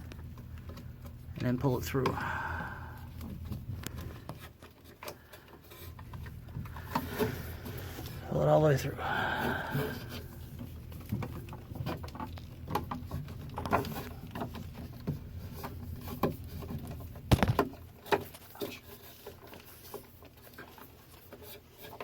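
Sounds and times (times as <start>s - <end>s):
cable rustling and scraping: 0.0s - 2.2s, 3.0s - 22.0s
small knocks and clicks: 3.1s - 8.2s, 10.6s - 22.0s.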